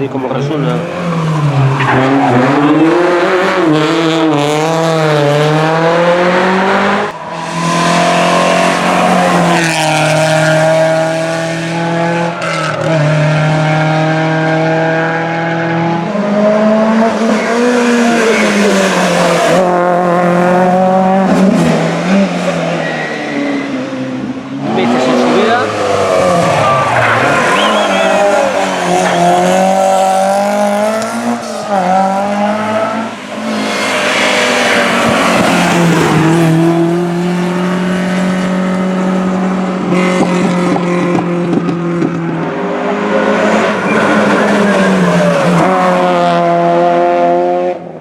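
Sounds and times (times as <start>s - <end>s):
rally car engines at high revs: 0.0s - 48.0s
tyre squeal: 25.8s - 30.0s.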